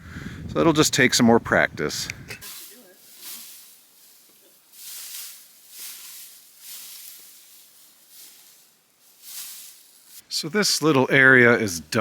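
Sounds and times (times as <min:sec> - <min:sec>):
swishing strokes through grass: 0:02.4 - 0:10.3.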